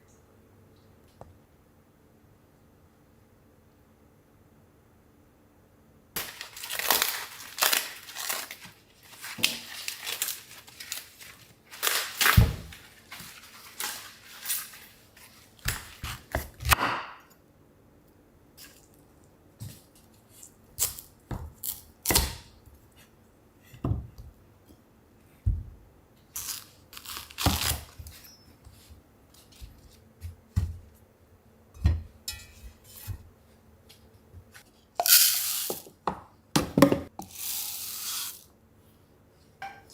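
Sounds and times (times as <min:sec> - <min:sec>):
vegetables rustling and tearing: 0:06.2 - 0:16.6, 0:26.4 - 0:28.2.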